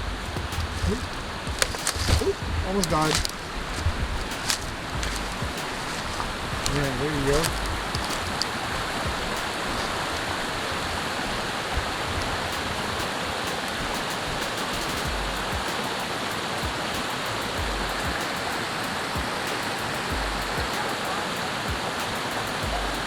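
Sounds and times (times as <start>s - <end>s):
low thumps on microphone: 0.0s - 10.1s
waterfall pouring and splashing: 0.0s - 23.0s.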